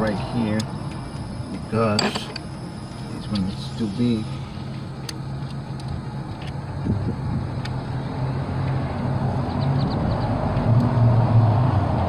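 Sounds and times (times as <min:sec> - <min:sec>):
motor vehicle engine droning: 0:00.0 - 0:12.0.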